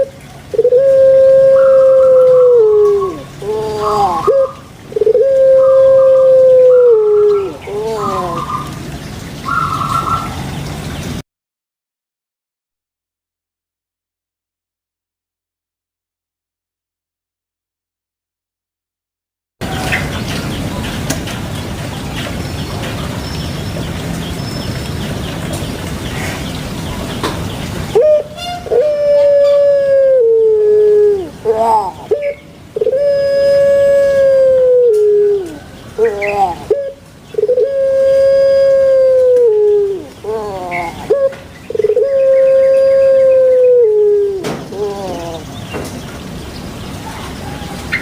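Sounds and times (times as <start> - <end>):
dove cooing: 0.0 - 8.8, 27.9 - 45.5
steady noisy hiss: 0.0 - 11.2, 19.6 - 48.0.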